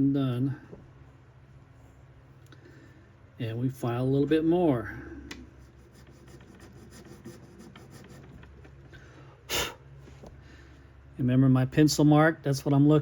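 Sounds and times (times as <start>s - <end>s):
needle file rasping: 5.6s - 8.6s.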